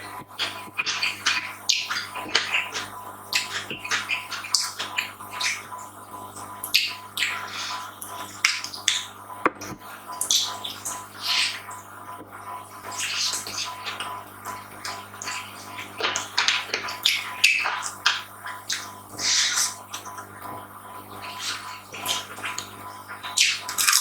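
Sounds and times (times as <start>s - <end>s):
person chewing: 0.4s - 5.6s, 23.4s - 24.0s.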